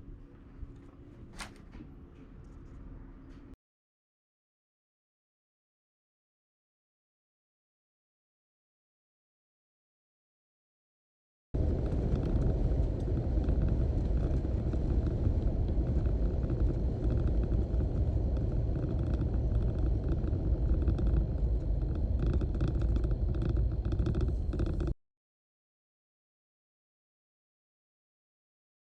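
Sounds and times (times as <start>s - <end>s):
wind and road noise: 11.6s - 25.0s.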